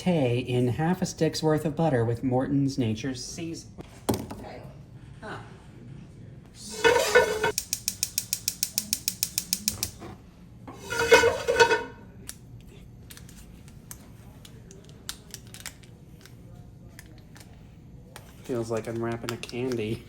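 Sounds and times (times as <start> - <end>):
rapid sharp mechanical clicks: 7.6 - 9.9.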